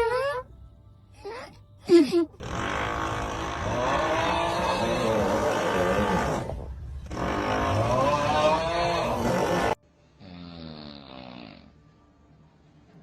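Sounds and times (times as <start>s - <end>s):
person snoring: 2.4s - 11.7s.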